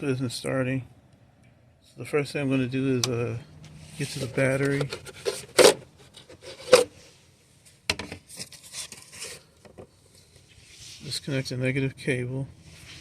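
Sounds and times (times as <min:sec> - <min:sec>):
scraping and rubbing: 0:03.8 - 0:07.2, 0:08.2 - 0:09.5.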